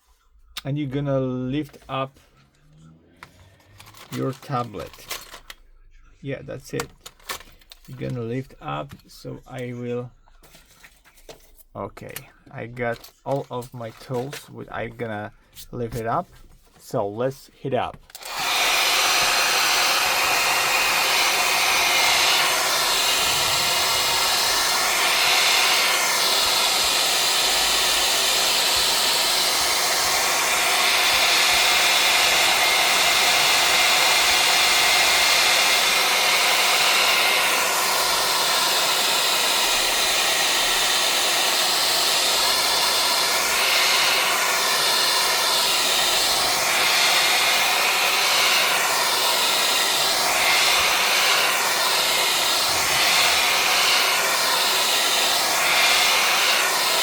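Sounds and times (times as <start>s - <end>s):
hair dryer blowing: 18.1s - 57.0s.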